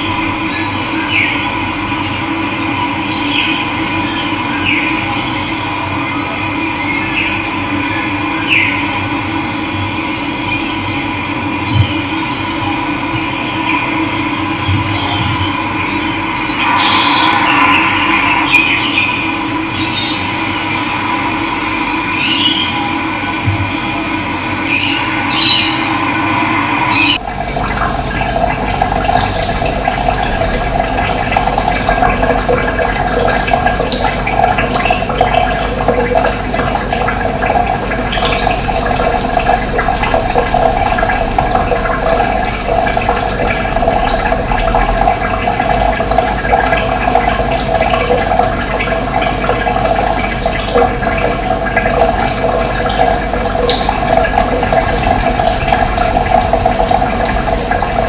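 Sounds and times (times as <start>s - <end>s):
running water rushing: 13.2s - 23.4s, 24.3s - 58.0s.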